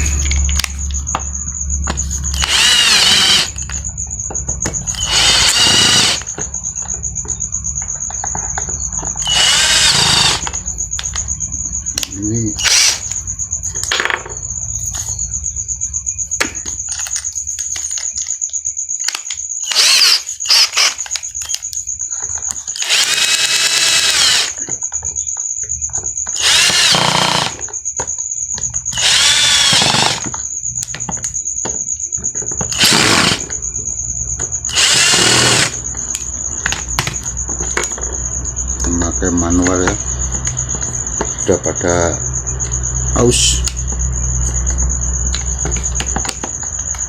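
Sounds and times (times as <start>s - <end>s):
electric drill motor whining: 2.2s - 3.8s, 4.9s - 6.4s, 9.2s - 11.1s, 12.6s - 13.2s, 19.1s - 21.6s, 22.8s - 24.6s, 26.4s - 27.6s, 28.9s - 30.4s, 32.7s - 33.6s, 34.7s - 37.1s.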